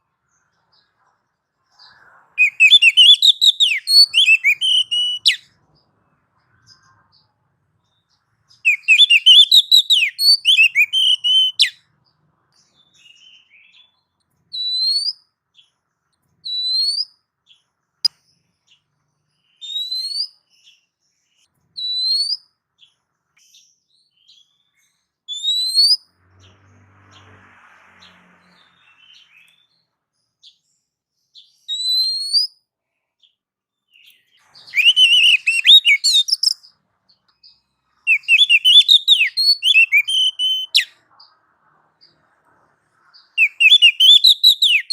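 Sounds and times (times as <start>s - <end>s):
bird rising whistled notes: 2.4s - 5.4s, 8.7s - 11.7s, 34.6s - 36.6s, 38.1s - 40.9s.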